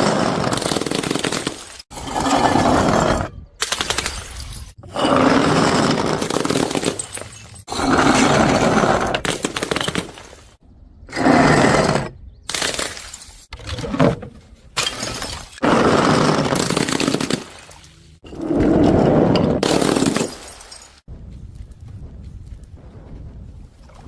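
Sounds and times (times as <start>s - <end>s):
objects smashing and shattering: 0.0s - 10.6s, 12.5s - 17.8s, 18.8s - 21.0s.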